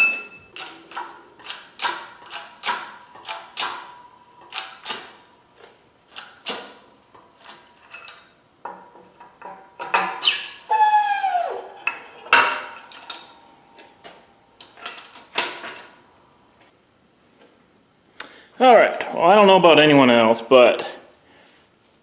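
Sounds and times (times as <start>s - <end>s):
metal squeal falling in pitch: 10.2s - 11.7s.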